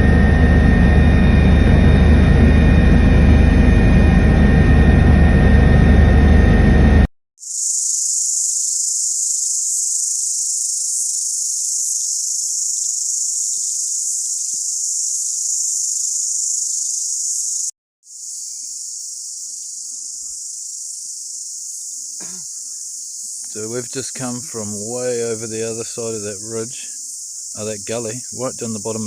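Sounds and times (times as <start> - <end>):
insects buzzing: 7.4 - 29.0.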